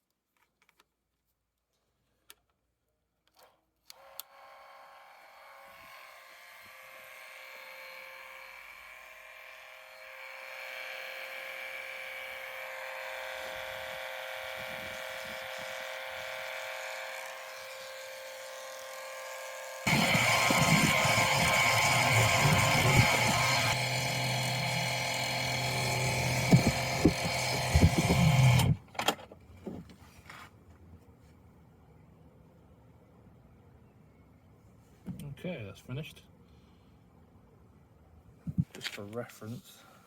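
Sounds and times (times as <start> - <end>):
electric fluid pump whining: 5.8 - 28.9.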